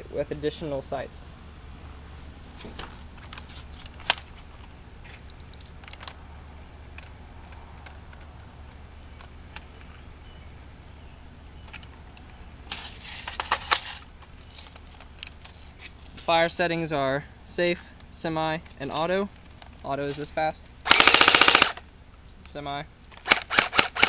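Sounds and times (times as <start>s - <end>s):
steady low hum: 0.0s - 24.0s
airsoft rifle clicks: 20.9s - 21.8s, 23.1s - 24.0s.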